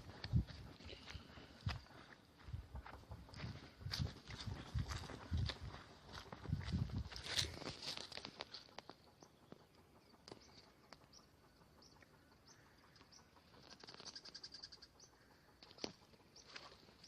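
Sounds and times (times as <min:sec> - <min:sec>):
faint bird chirps: 0:08.5 - 0:17.0.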